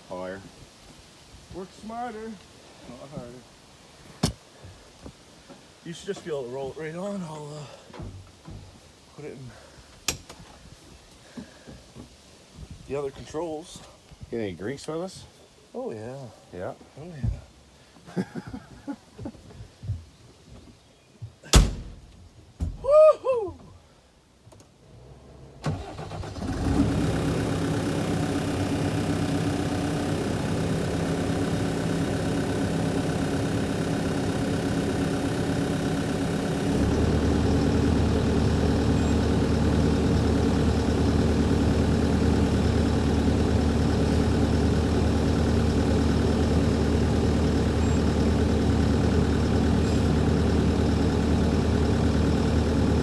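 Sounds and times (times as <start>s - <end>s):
tracked machine engine running: 25.7s - 53.0s.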